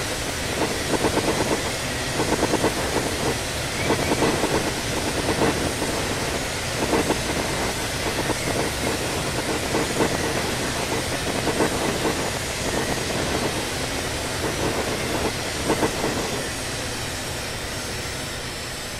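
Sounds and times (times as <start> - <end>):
freight train running noise: 0.0 - 18.9.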